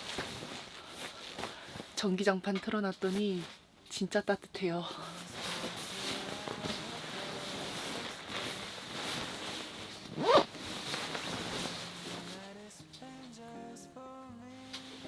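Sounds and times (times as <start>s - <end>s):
fabric rustling: 0.0s - 2.2s, 2.8s - 4.0s, 4.9s - 13.3s, 14.8s - 15.0s
zipper pull: 5.4s - 12.4s.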